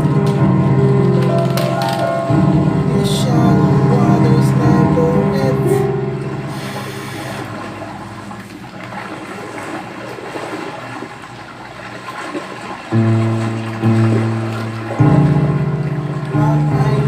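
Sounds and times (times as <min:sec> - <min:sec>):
low music chords: 0:00.0 - 0:09.4, 0:13.0 - 0:17.0
rushing water-like sound effect: 0:00.0 - 0:17.0.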